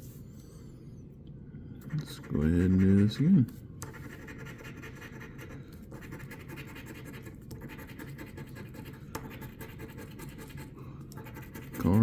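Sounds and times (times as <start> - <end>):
lottery ticket being scratched: 3.9 - 12.0.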